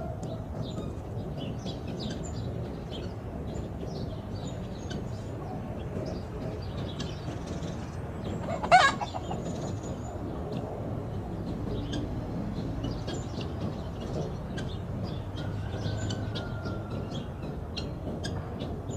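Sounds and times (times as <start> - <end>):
low background noise: 0.0 - 18.9
small birds chirping: 0.0 - 18.9
chicken squawk: 8.4 - 9.4.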